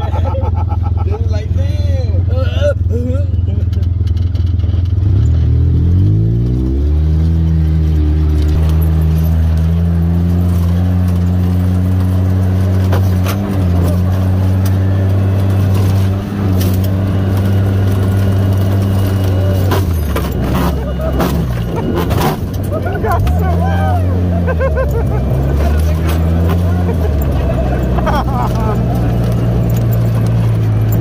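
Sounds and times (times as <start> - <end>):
off-road vehicle engine: 0.0 - 31.0.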